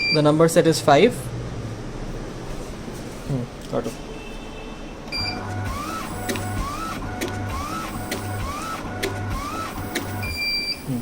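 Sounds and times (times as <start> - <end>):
machine beep: 0.0 - 0.3, 5.1 - 11.0
machine motor hum: 5.2 - 11.0
rising whine of tape feeding: 5.3 - 10.3.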